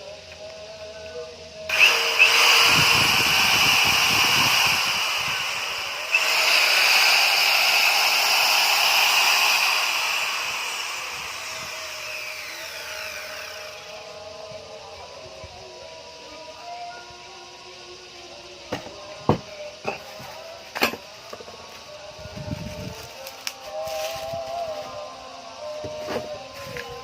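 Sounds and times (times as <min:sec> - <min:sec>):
power tool whining: 0:01.7 - 0:15.2.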